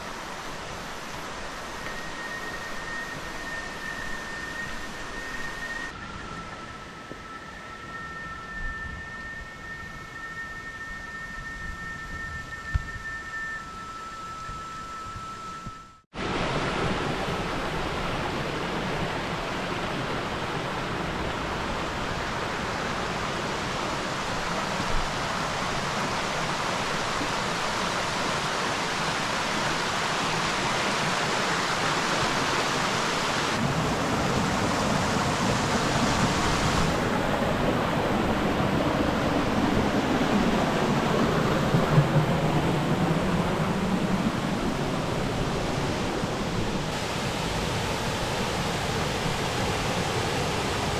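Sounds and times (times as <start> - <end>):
rushing water: 0.0 - 5.9, 16.2 - 50.9.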